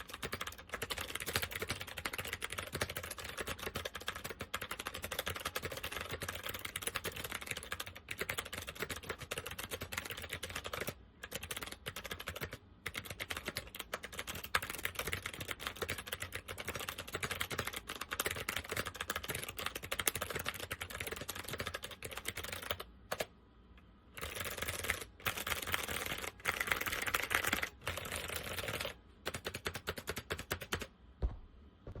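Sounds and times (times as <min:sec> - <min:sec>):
fast typing on clicky keyboard: 0:00.0 - 0:23.3, 0:24.2 - 0:30.9.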